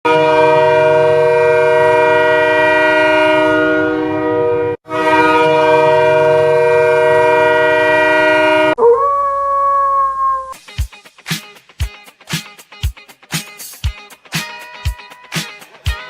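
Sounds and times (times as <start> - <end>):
air horn chord blasts: 0.1 - 8.9
single rising tone: 8.8 - 10.6.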